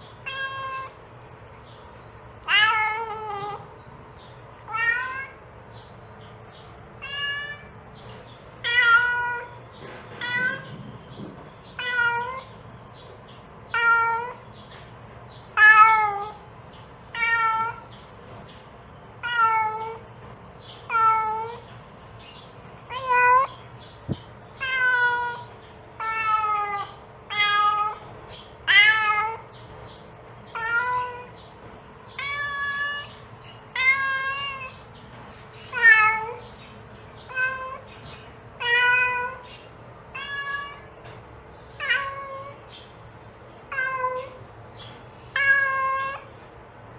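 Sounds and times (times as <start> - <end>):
cat meowing: 0.2 - 1.0, 2.4 - 3.7, 4.6 - 5.4, 7.0 - 7.8, 8.6 - 10.7, 11.7 - 12.6, 13.7 - 14.4, 15.5 - 16.5, 17.1 - 17.9, 19.2 - 20.1, 20.8 - 21.7, 22.9 - 23.6, 24.5 - 28.0, 28.6 - 29.5, 30.5 - 31.4, 32.1 - 34.8, 35.7 - 36.4, 37.2 - 37.9, 38.6 - 39.5, 40.1 - 40.9, 41.8 - 42.6, 43.6 - 44.4, 45.3 - 46.3.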